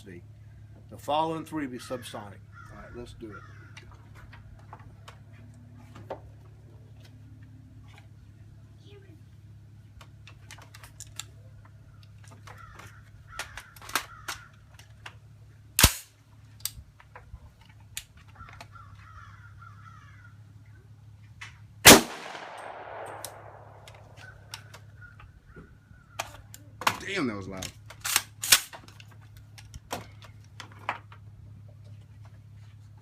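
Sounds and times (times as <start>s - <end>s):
rifle shots: 15.8s - 16.1s, 21.8s - 24.1s.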